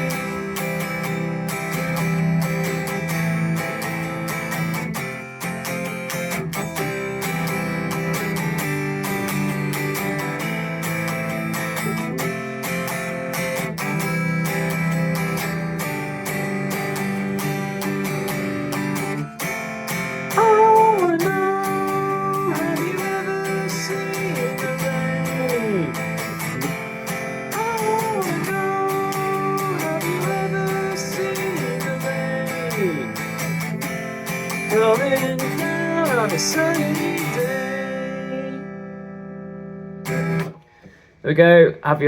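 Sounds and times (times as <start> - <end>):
guitar strumming: 0.0 - 42.0
person singing long notes: 20.4 - 33.2, 34.7 - 38.7.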